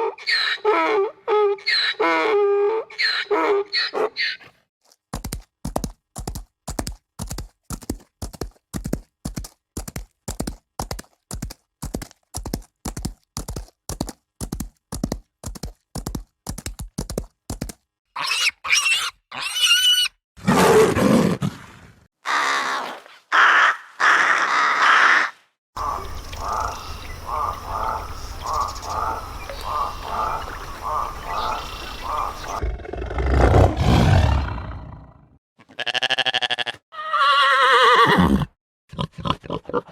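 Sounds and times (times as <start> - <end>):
long full animal calls: 23.3 - 32.6
high wavering animal calls: 25.8 - 32.6
fast croak-like call: 25.8 - 32.7.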